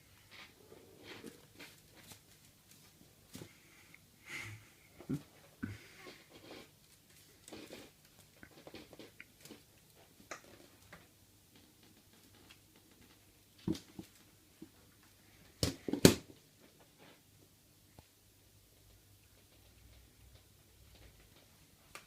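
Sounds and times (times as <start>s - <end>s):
faint rustles and clicks: 0.0s - 4.1s, 4.9s - 15.6s, 16.3s - 22.0s.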